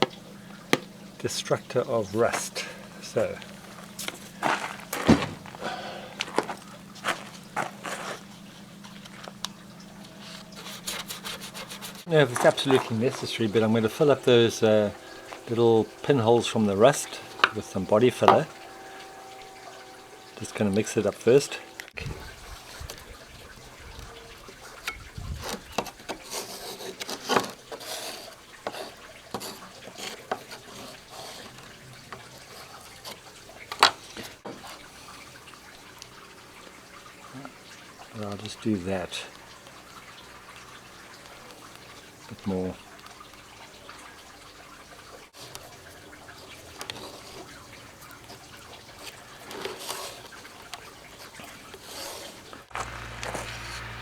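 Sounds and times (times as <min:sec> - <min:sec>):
wet scraping of filler mixing: 0:00.0 - 0:54.0.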